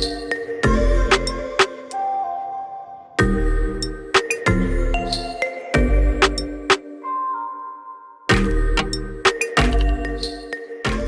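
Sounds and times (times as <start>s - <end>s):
background music with deep bass: 0.0s - 2.1s, 3.2s - 7.2s, 8.3s - 11.0s.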